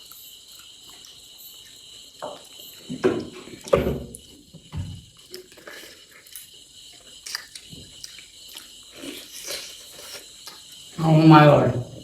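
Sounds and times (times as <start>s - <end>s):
wet bites and chews: 0.0s - 1.8s, 5.2s - 10.7s
crickets chirring: 0.0s - 12.0s.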